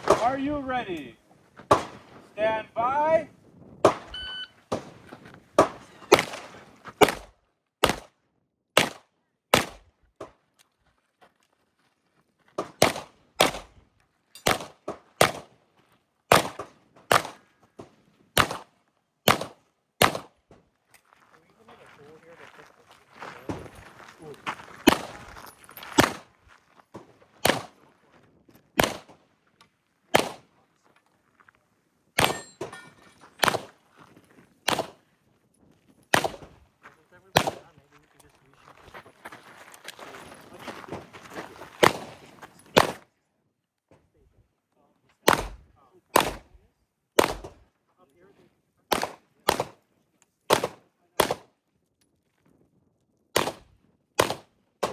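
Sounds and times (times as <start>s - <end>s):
gunshots: 0.0s - 8.1s, 8.8s - 9.8s, 12.6s - 13.7s, 14.4s - 15.5s, 16.3s - 17.4s, 18.4s - 18.7s, 19.3s - 20.3s, 24.8s - 25.3s, 26.0s - 26.3s, 27.4s - 27.8s, 28.8s - 29.2s, 30.1s - 30.5s, 32.2s - 33.8s, 34.7s - 35.0s, 36.1s - 36.6s, 37.3s - 37.8s, 41.8s - 43.0s, 45.3s - 46.5s, 47.2s - 47.6s, 48.9s - 49.8s, 50.5s - 51.5s, 53.4s - 54.9s.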